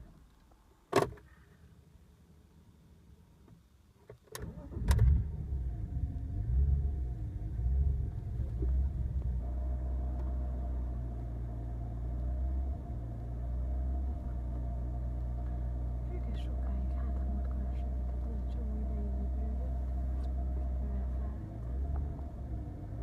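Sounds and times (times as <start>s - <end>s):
car engine rough idle: 4.5s - 23.0s.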